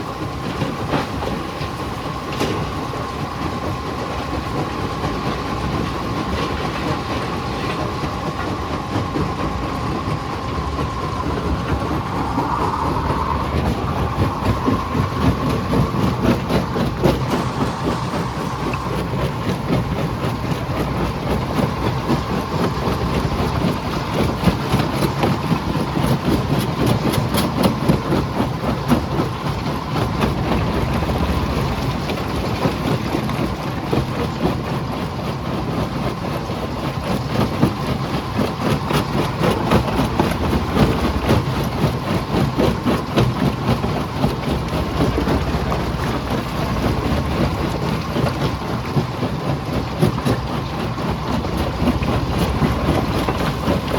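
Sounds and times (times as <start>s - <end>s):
jaw crusher machine noise: 6.6s - 27.9s.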